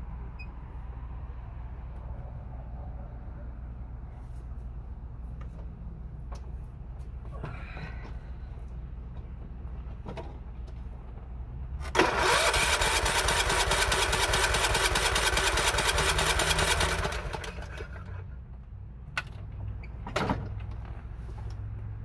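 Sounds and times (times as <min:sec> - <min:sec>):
mower engine cranking: 0:11.8 - 0:18.2.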